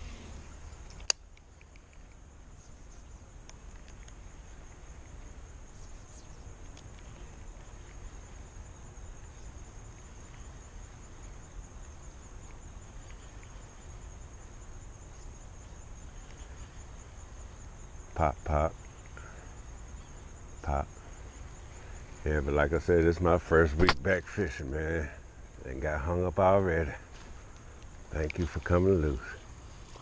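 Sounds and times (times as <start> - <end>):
faint outdoor rumble: 0.0 - 30.0
high insect chirring: 0.0 - 30.0
sharp click: 0.9 - 2.0, 23.8 - 24.2.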